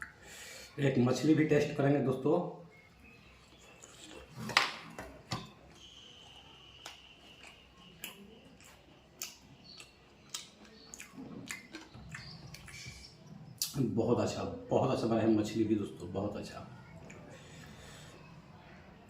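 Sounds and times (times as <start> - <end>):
person chewing fish: 6.8 - 13.7.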